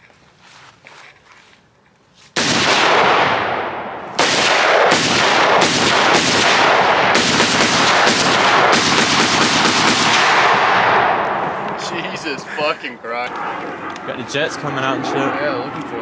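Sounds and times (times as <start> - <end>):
gunshots echoing: 2.4 - 15.1.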